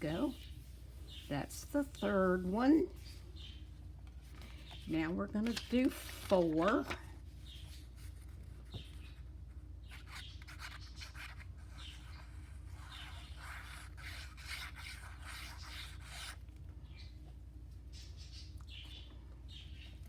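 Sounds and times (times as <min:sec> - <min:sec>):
faint steady hum: 0:00.0 - 0:20.0
paper rustling and rubbing: 0:04.0 - 0:16.4.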